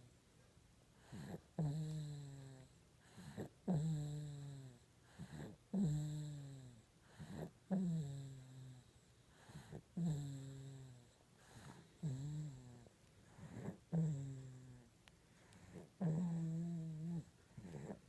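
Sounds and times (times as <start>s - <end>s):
person snoring: 9.5s - 14.8s, 15.6s - 18.0s.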